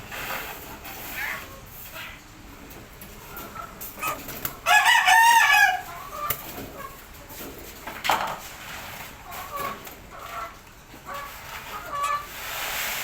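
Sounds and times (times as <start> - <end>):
rooster crowing: 4.6 - 5.9.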